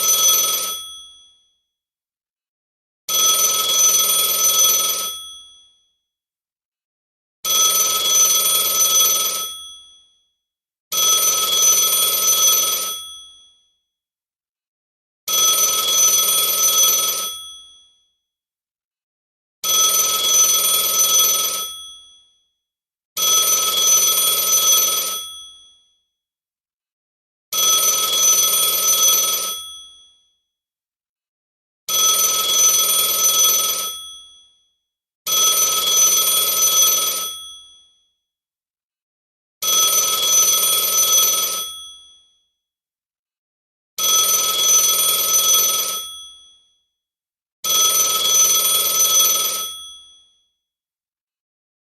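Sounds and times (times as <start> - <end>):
telephone ringing: 0.0 - 1.0, 3.2 - 5.4, 7.5 - 9.7, 10.9 - 13.2, 15.4 - 17.7, 23.4 - 25.5, 27.6 - 29.9, 32.3 - 34.2, 35.4 - 37.6, 39.7 - 42.0, 44.2 - 46.3, 47.6 - 50.0.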